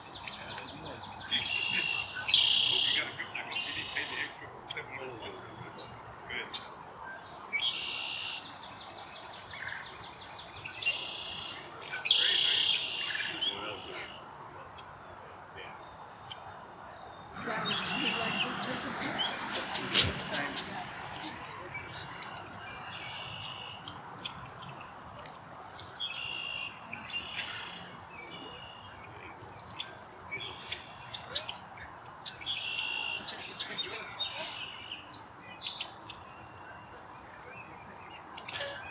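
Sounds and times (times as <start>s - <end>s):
small birds trilling and chirping: 0.0s - 38.9s.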